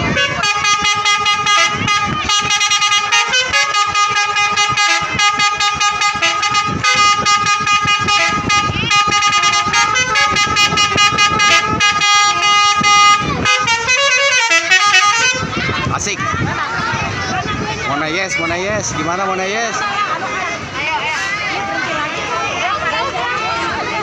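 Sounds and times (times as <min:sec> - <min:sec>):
musical bus horns: 0:00.0 - 0:15.9.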